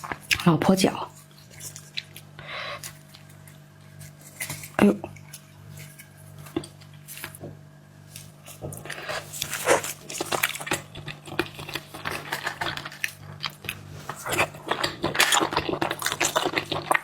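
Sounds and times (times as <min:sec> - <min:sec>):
wet chewing and smacking: 0:00.0 - 0:07.5, 0:08.1 - 0:17.0.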